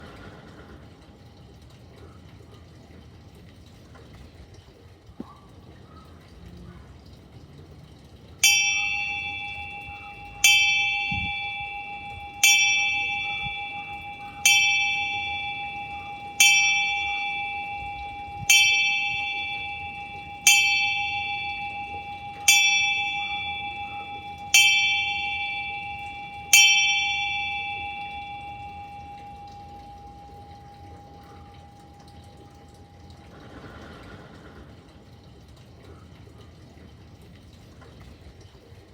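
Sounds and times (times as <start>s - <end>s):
bell ringing: 8.4s - 34.3s.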